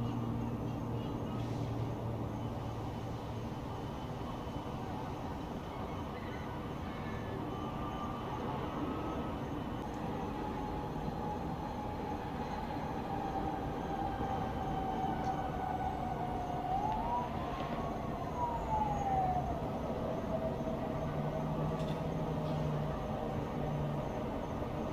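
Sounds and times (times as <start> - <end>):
distant traffic hum: 0.0 - 24.9
far-off siren wailing: 6.6 - 24.8.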